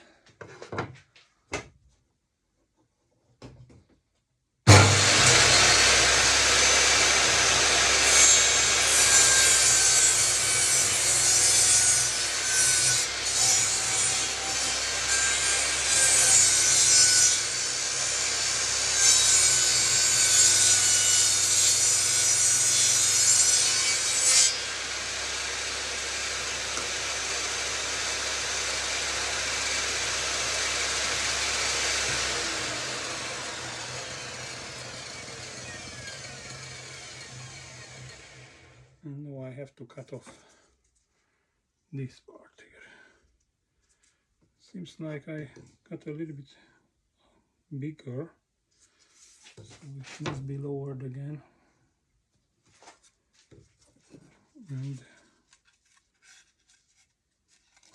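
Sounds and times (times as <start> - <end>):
electric saw cutting wood: 4.7 - 39.0.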